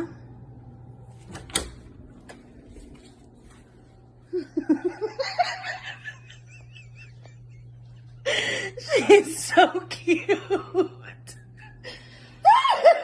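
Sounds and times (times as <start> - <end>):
steady low hum: 0.0 - 13.0
person laughing: 4.2 - 13.0.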